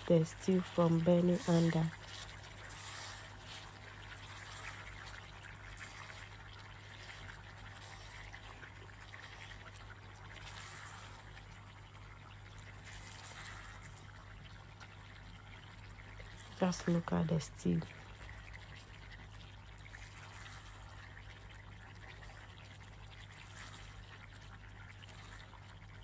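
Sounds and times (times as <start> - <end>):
steady low hum: 0.0 - 12.7
stew sloshing and bubbling: 0.0 - 26.0.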